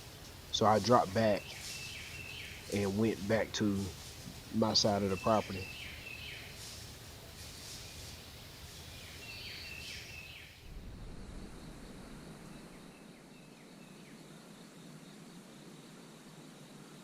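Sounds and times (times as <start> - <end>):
small songbird calling: 0.0 - 10.6
background hiss: 0.0 - 17.0.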